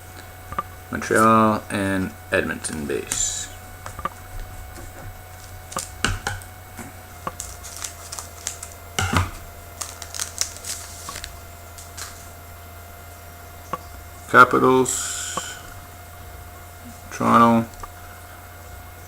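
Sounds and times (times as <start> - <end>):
electrical hum: 0.0 - 19.0
cards clicking and snapping: 7.2 - 12.3.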